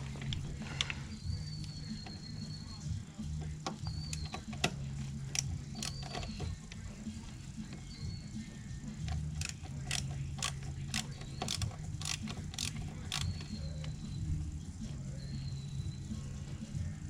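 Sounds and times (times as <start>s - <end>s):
hand tools clicking and clinking: 0.0s - 2.6s, 3.3s - 8.0s, 8.8s - 14.0s
steady low hum: 0.0s - 17.0s
small metal parts clinking: 3.6s - 6.8s, 9.0s - 13.9s.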